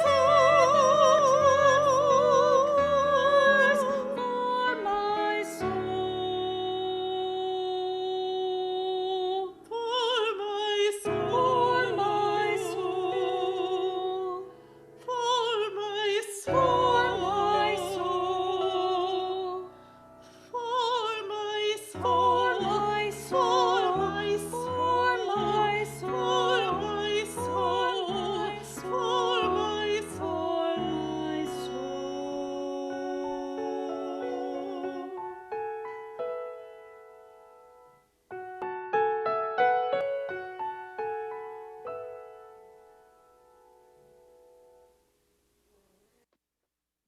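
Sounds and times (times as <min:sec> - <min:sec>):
woman singing with vibrato: 0:00.0 - 0:19.7, 0:20.5 - 0:35.5
piano chords: 0:00.0 - 0:45.0.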